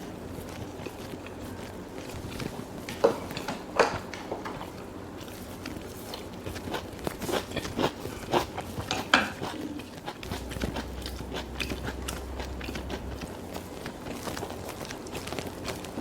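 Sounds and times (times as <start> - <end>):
faint low hum: 0.0 - 16.0
crisp crunching bites and chewing: 5.7 - 16.0.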